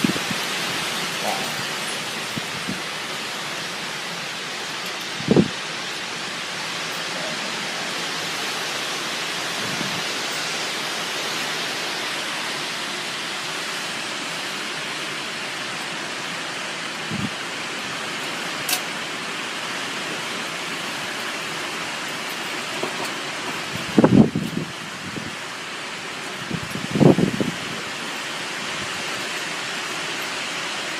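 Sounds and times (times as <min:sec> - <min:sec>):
storm wind rushing: 0:00.0 - 0:03.6, 0:05.1 - 0:05.7, 0:09.5 - 0:10.3.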